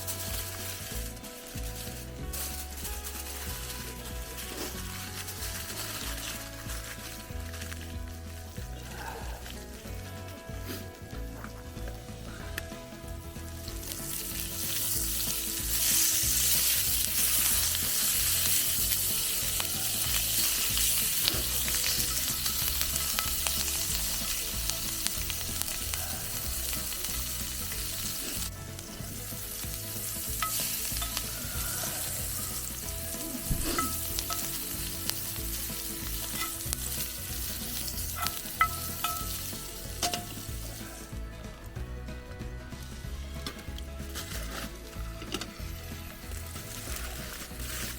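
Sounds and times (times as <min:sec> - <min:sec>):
steak sizzling in a pan: 0:00.0 - 0:10.8, 0:11.6 - 0:41.2, 0:42.8 - 0:47.9
utensil clinking on pan: 0:30.3 - 0:32.6, 0:33.6 - 0:34.9, 0:36.1 - 0:37.1, 0:37.7 - 0:40.5.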